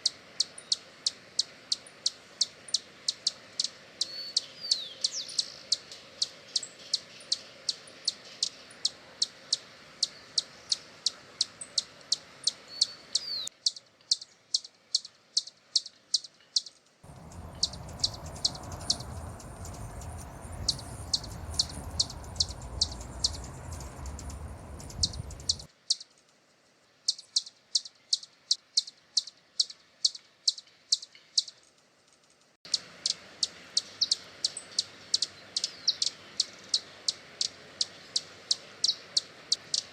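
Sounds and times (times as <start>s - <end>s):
hummingbird chip notes: 17.1s - 25.7s
low rumbling noise: 17.1s - 25.7s.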